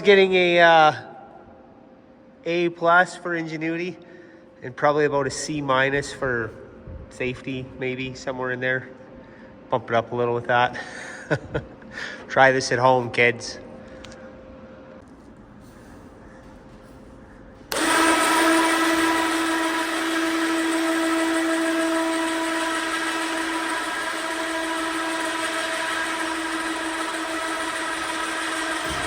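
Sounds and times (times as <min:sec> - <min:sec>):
machine motor high whine: 0:15.6 - 0:29.0.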